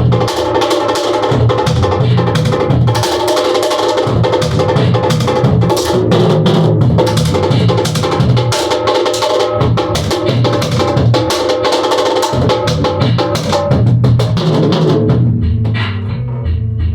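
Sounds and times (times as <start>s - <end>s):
drum kit striking rapidly: 0.0s - 16.9s
funk band playing live: 4.0s - 16.9s.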